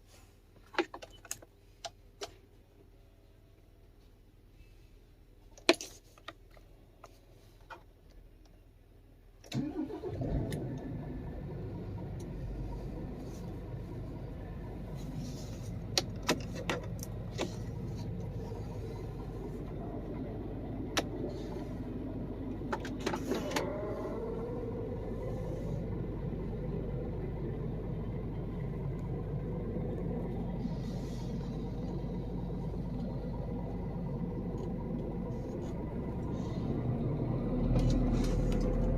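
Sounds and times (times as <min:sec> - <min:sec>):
diesel truck engine starting and idling: 0:09.4 - 0:38.9.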